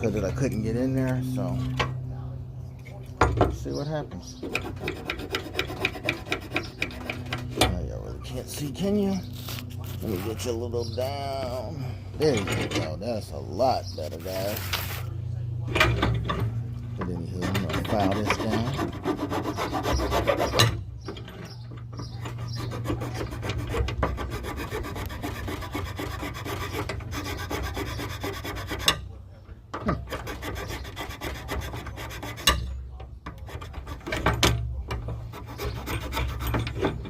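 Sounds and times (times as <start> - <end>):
hand file rasping on metal: 4.3 - 7.6, 17.1 - 20.8, 21.5 - 29.1, 29.9 - 34.4, 35.1 - 37.0.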